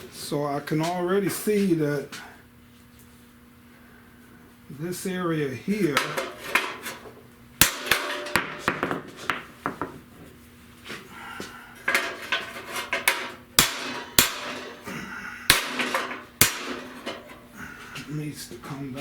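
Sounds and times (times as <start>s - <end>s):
hammer striking sheet metal: 5.9s - 7.0s, 7.6s - 9.8s, 11.9s - 17.4s.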